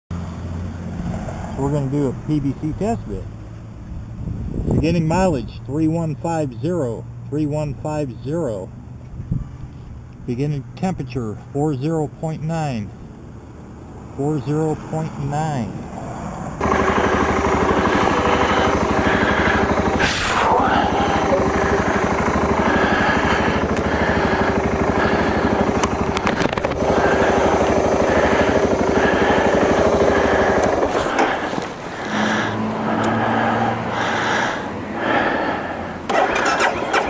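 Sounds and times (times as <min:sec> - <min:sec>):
engine cranking on electric starter: 0:16.6 - 0:37.0.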